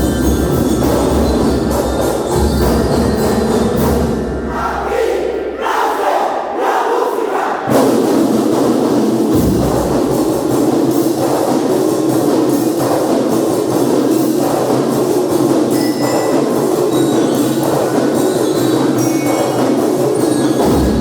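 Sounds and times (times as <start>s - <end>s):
marching band playing: 0.0s - 5.4s.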